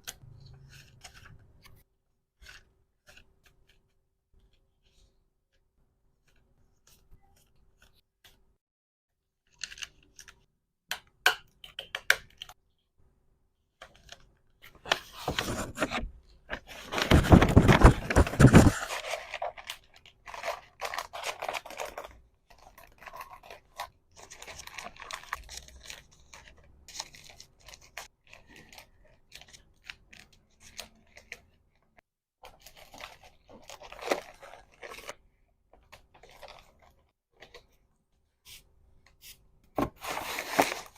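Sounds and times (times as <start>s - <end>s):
packaging crinkling and tearing: 16.7s - 28.7s.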